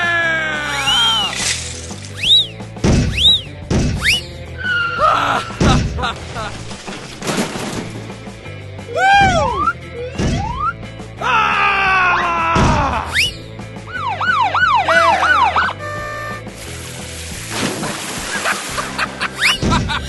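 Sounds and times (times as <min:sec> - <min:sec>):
background music: 0:00.0 - 0:20.0
sliding whistle tones: 0:02.1 - 0:05.0, 0:13.1 - 0:13.5
siren-like wails: 0:13.9 - 0:16.3.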